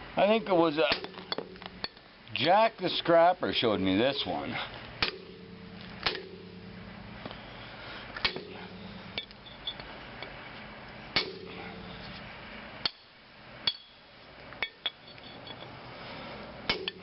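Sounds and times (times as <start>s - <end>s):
hammer striking hatchet on steel: 0.4s - 2.0s, 5.0s - 6.6s, 8.2s - 9.3s, 11.2s - 11.8s, 16.7s - 17.0s
sharp metallic clanks: 5.0s - 6.7s, 8.2s - 10.4s, 11.2s - 11.9s, 12.8s - 15.8s, 16.7s - 17.0s.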